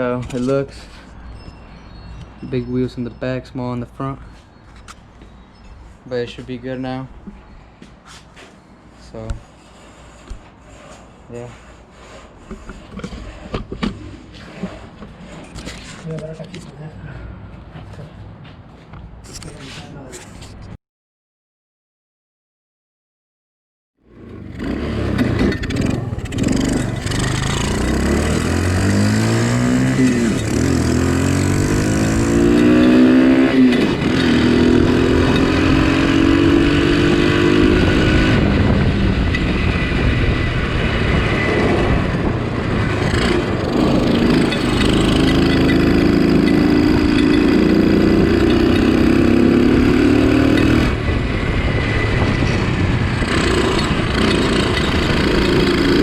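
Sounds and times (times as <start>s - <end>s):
kart engine accelerating and shifting: 24.1s - 56.0s.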